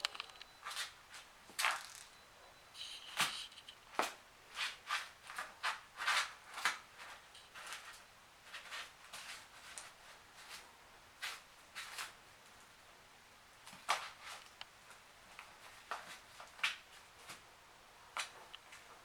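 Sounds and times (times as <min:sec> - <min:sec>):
scratchy rustles and clicks: 0:00.0 - 0:02.2, 0:02.8 - 0:12.2.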